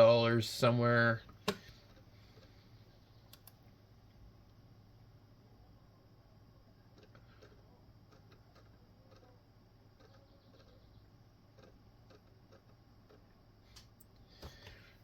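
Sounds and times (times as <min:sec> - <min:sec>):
faint room hum: 0:00.0 - 0:15.0
computer mouse clicks: 0:03.3 - 0:03.6.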